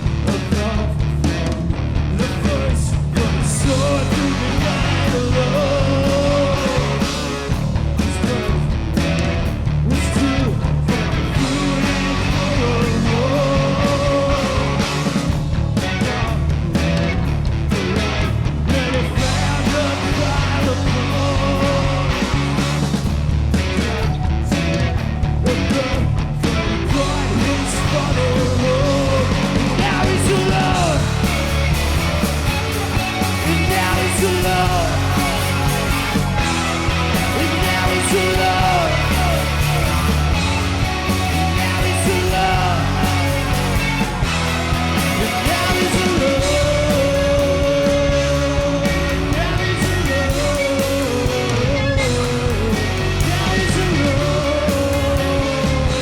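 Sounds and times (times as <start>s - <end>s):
electric guitar: 0.0s - 56.0s
punk rock band playing: 0.0s - 56.0s
sung and yelled vocals: 0.0s - 56.0s
person singing: 2.2s - 8.7s, 9.9s - 15.3s, 18.7s - 22.9s, 25.5s - 31.7s, 32.6s - 56.0s.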